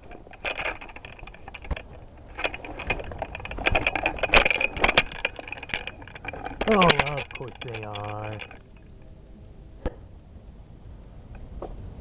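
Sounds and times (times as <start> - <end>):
loose gear rattling: 0.0 - 9.0.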